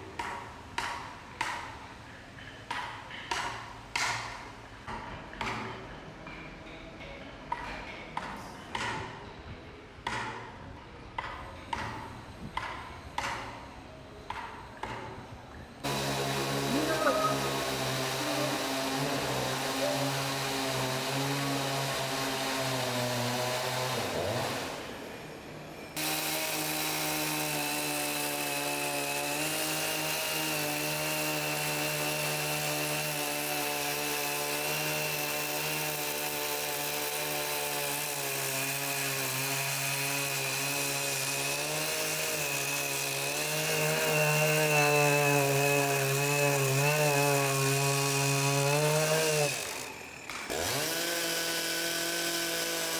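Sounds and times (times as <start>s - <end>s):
power saw cutting wood: 15.8s - 52.9s.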